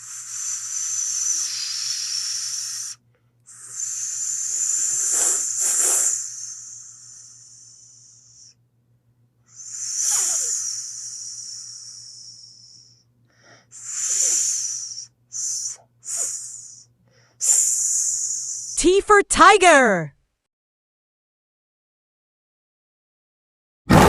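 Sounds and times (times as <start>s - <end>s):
snake hissing: 0.0s - 8.5s, 9.5s - 13.0s, 13.7s - 18.8s.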